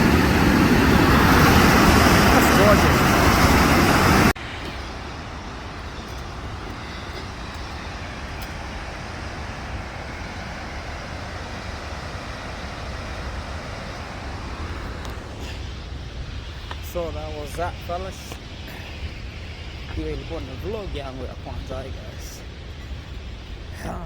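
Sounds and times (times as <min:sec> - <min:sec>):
waterfall roaring: 0:00.0 - 0:15.6.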